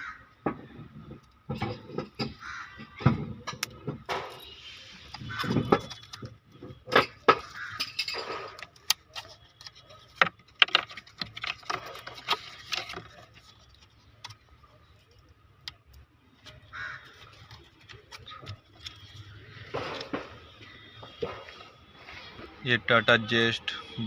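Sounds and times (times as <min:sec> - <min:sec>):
metal tools clinking: 0:06.8 - 0:10.2.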